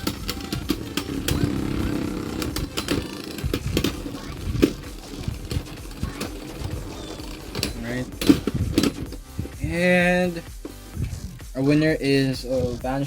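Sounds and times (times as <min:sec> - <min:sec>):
tops clicking against each other: 0:00.0 - 0:09.6
spinning tops whirring: 0:00.0 - 0:11.1.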